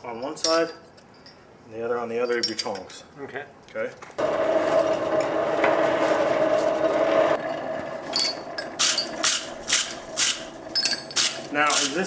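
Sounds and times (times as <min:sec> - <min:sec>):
forge blower whining: 0:04.2 - 0:12.0
wire brush scraping iron: 0:08.2 - 0:12.0.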